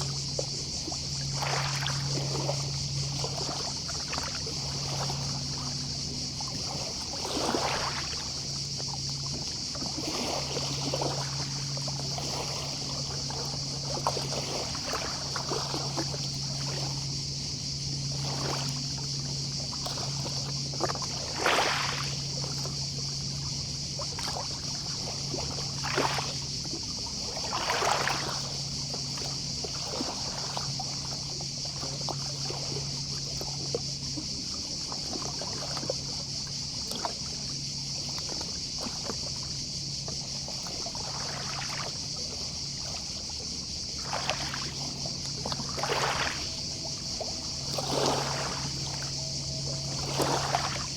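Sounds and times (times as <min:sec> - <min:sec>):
distant cicadas buzzing: 0:00.0 - 0:50.9
small waves lapping on beach: 0:00.0 - 0:50.9
low drone: 0:44.8 - 0:50.9.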